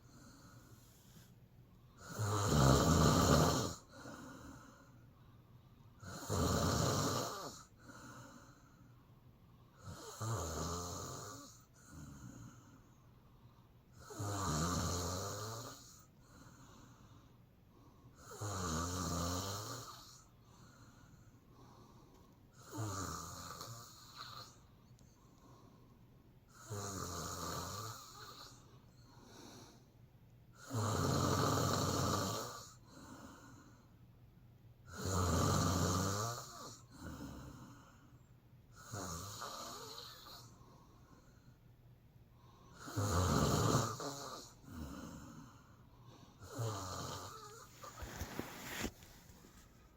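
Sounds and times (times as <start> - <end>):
soft breathing: 0.0 - 1.6, 47.2 - 49.9
woman snoring: 2.0 - 4.6, 6.0 - 7.7, 9.8 - 12.4, 14.0 - 16.0, 18.2 - 20.2, 22.6 - 24.6, 26.5 - 28.6, 30.6 - 32.8, 34.9 - 37.7, 38.8 - 40.5, 42.8 - 45.5, 46.4 - 49.6.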